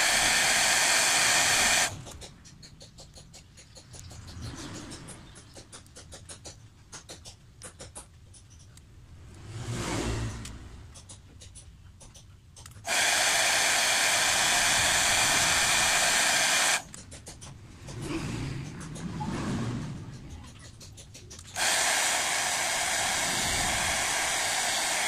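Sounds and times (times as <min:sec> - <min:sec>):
hair dryer blowing: 0:00.0 - 0:02.0, 0:12.9 - 0:16.9, 0:21.6 - 0:25.0.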